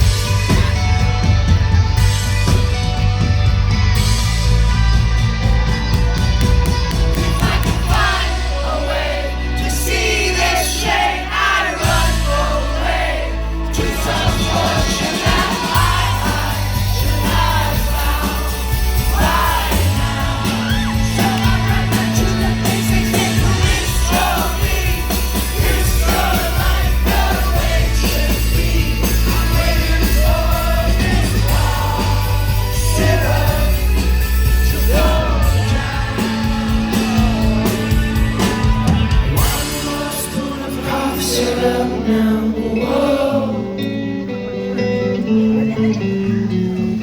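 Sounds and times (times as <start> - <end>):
held bass notes: 0.0 - 47.0
live rock band playing: 0.0 - 47.0
lead vocal singing: 7.1 - 44.6.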